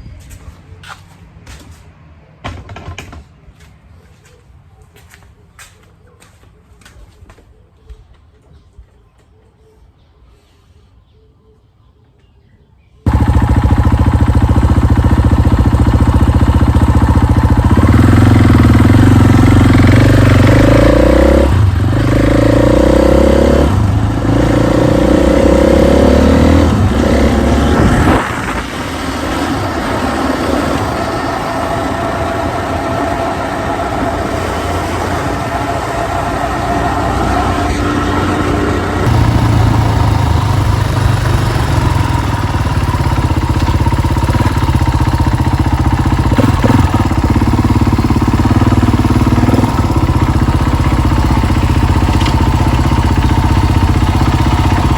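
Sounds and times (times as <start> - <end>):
motorcycle engine running: 13.1 - 54.9.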